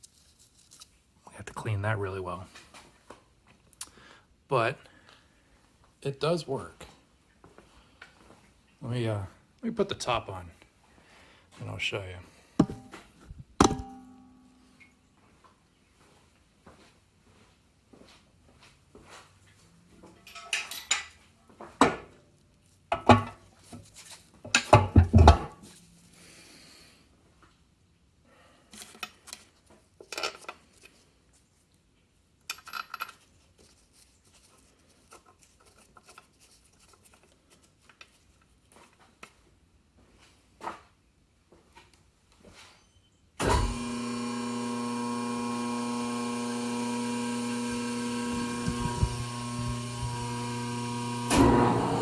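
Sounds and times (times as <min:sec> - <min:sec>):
metal clanks and scrapes: 0:24.5 - 0:25.8.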